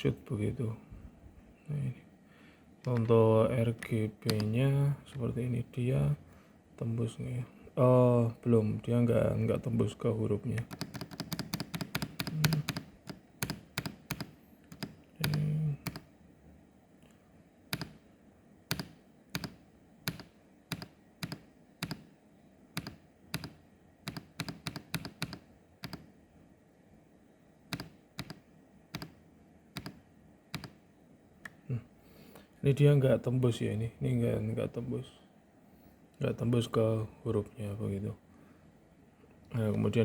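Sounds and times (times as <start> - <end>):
keyboard keys clicking: 10.6 - 16.1, 17.7 - 18.0, 18.7 - 22.1, 22.8 - 26.1, 27.7 - 29.2, 29.8 - 30.8.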